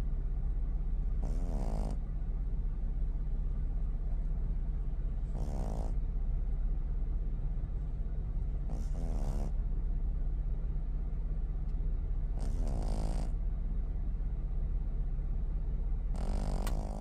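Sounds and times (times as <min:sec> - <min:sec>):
steady low hum: 0:00.0 - 0:17.0
puppy snoring: 0:01.2 - 0:02.1, 0:05.2 - 0:06.0, 0:08.6 - 0:09.6, 0:12.3 - 0:13.4, 0:16.1 - 0:17.0.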